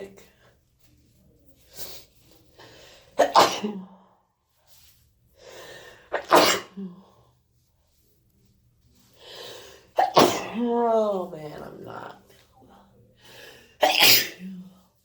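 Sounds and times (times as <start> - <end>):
person sneezing: 3.2 - 3.9, 6.1 - 7.0, 13.8 - 14.7.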